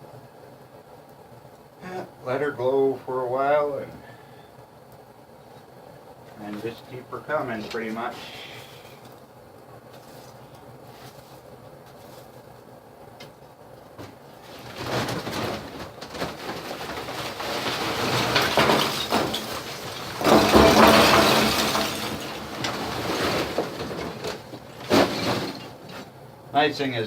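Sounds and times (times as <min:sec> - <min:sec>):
coal being raked and stirred: 0:06.3 - 0:09.1, 0:09.9 - 0:12.6, 0:14.1 - 0:26.2.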